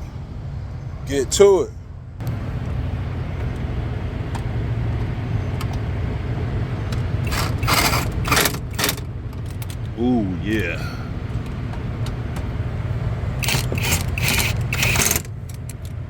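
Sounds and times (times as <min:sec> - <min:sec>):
truck engine idling: 0:00.0 - 0:16.0
power driver running bolts: 0:06.6 - 0:16.0.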